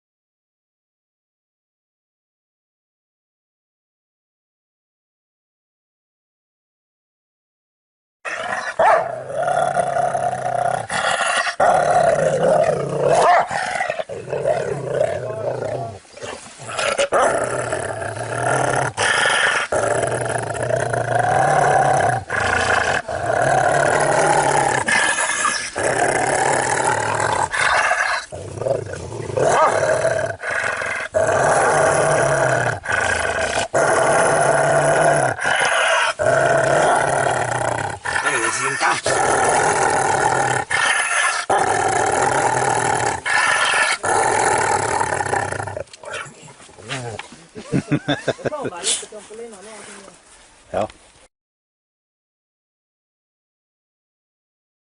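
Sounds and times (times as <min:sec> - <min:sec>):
dog growling and barking: 0:08.3 - 0:47.3.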